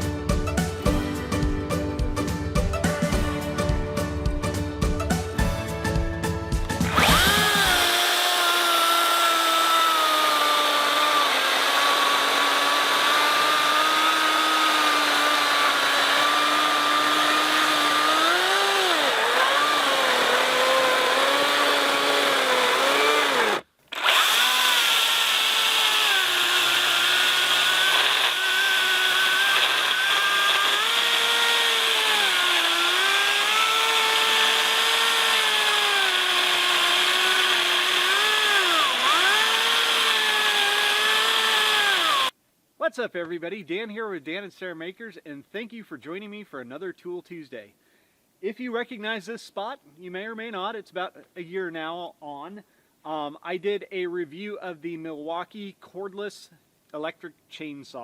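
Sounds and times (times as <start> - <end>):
electric chainsaw cutting wood: 6.6 - 42.3.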